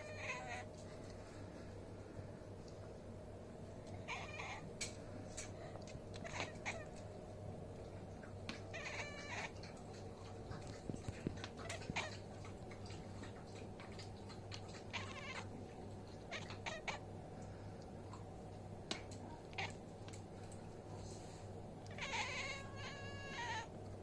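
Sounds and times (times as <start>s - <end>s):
cat crying: 0.0s - 0.7s, 4.0s - 4.7s, 6.1s - 7.0s, 8.6s - 9.6s, 11.4s - 12.3s, 14.8s - 15.6s, 16.3s - 17.1s, 19.4s - 19.8s, 21.9s - 23.8s
steady low hum: 0.0s - 24.0s.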